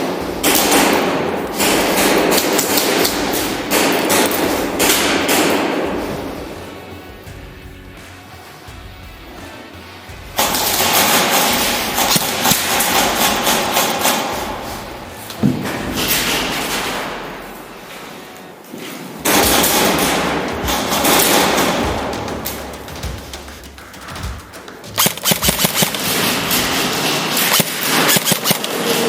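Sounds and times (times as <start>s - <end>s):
airsoft guns firing bursts: 19.2s - 28.8s.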